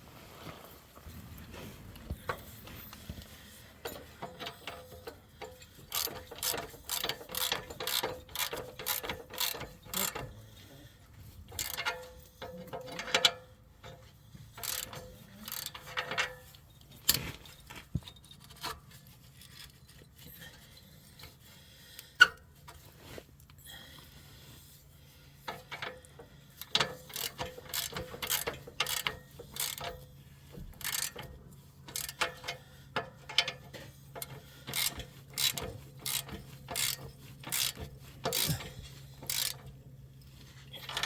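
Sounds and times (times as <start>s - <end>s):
ratchet wrench clicking: 3.8s - 10.3s, 11.5s - 13.4s, 14.6s - 16.2s, 26.6s - 30.1s, 30.8s - 32.6s, 34.2s - 39.8s.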